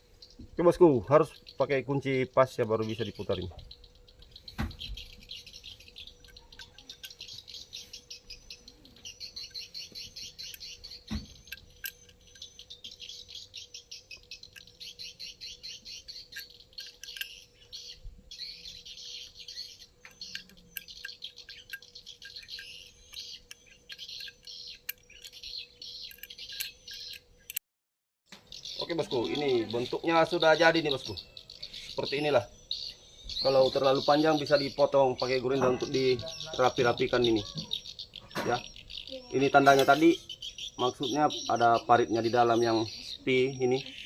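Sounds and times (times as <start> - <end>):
small birds chirping: 0.0 - 27.6, 28.3 - 44.0.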